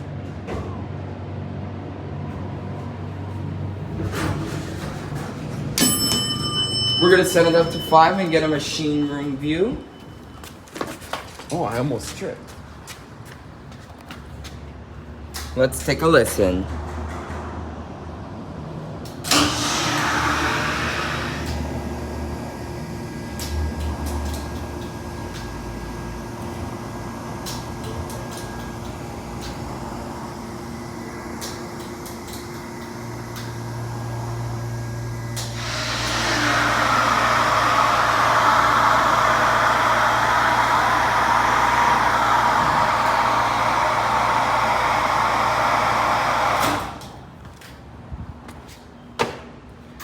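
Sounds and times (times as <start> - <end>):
elevator machinery humming: 0.8 - 11.3, 19.2 - 47.5.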